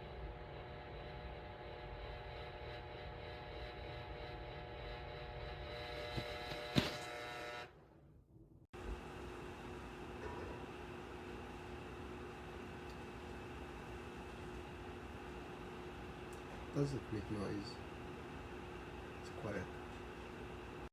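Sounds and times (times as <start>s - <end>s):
fan heater humming: 0.0s - 7.8s, 8.8s - 20.9s
steady hum: 8.8s - 20.9s.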